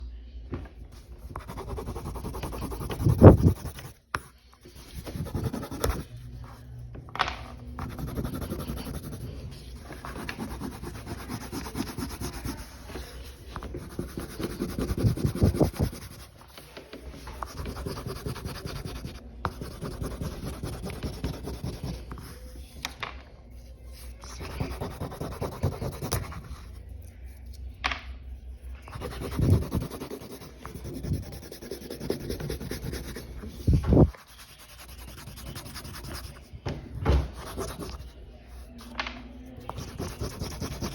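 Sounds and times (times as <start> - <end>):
colouring tool scratching: 1.2 - 6.2, 7.6 - 16.4, 17.4 - 22.4, 24.4 - 26.7, 28.9 - 36.5, 37.3 - 38.1, 39.6 - 40.9.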